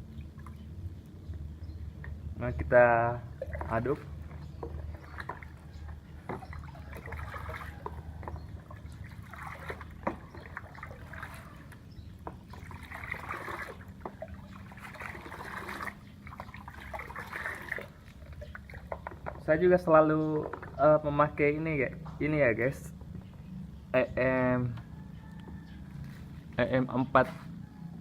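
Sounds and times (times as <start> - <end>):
water sloshing: 0.0 - 23.5
stirrer knocking container: 3.4 - 9.0, 9.6 - 11.4, 18.8 - 20.8.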